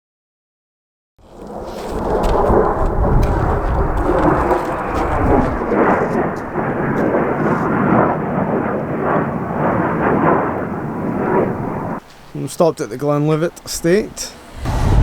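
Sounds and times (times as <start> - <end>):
wind buffeting microphone: 1.4 - 12.0, 13.9 - 15.0
car driving at speed: 14.3 - 15.0.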